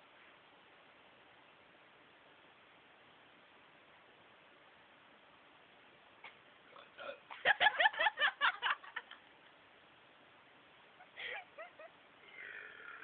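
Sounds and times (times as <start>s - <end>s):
person belching: 12.2s - 13.0s.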